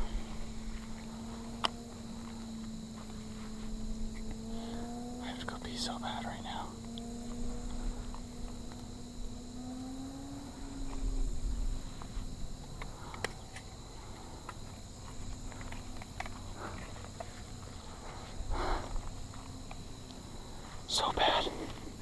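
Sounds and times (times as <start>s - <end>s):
faint low drone: 0.0s - 22.0s
insects trilling: 0.0s - 22.0s.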